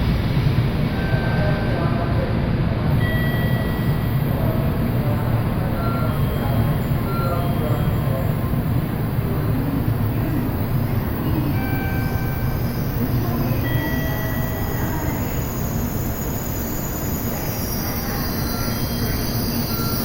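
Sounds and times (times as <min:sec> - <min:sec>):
train wheels rumbling: 0:00.0 - 0:20.0
faint high squeals: 0:03.0 - 0:08.9, 0:10.2 - 0:20.0.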